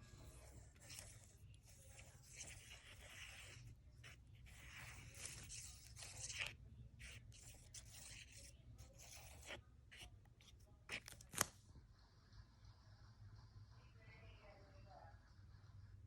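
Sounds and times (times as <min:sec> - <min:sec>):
scratching and rustling paper: 0:00.0 - 0:11.6.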